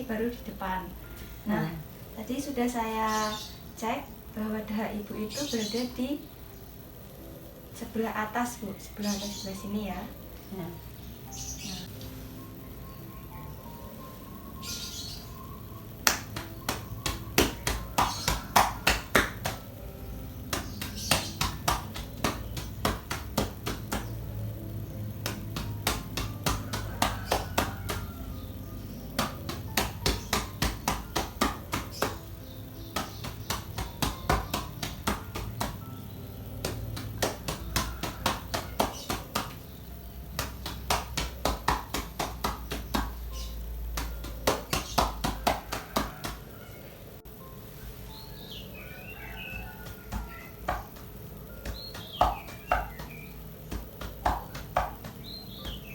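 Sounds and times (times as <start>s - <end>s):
cupped hands clapping on back: 16.0s - 19.8s, 20.5s - 24.2s, 25.2s - 28.3s, 29.1s - 35.9s, 36.6s - 39.7s, 40.4s - 46.5s, 49.8s - 55.9s.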